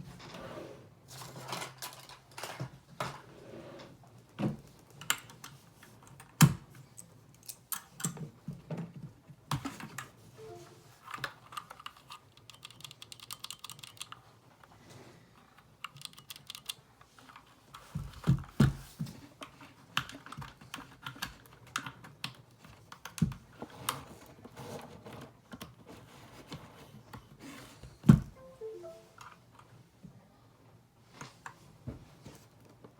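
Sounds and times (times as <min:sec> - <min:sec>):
mechanical keyboard typing: 0:11.5 - 0:14.2, 0:15.8 - 0:16.8.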